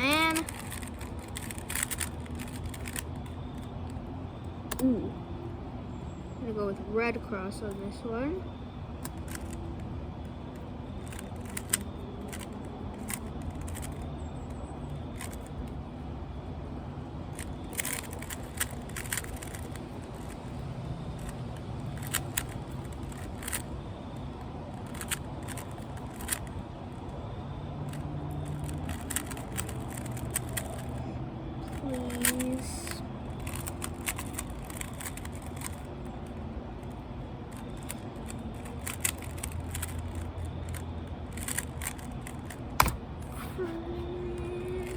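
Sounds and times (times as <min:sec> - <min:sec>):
plastic puzzle cube clicking: 0:00.0 - 0:04.0, 0:04.7 - 0:04.9, 0:09.0 - 0:15.8, 0:17.3 - 0:20.6, 0:21.2 - 0:26.5, 0:27.9 - 0:31.0, 0:31.7 - 0:43.2, 0:44.4 - 0:44.9.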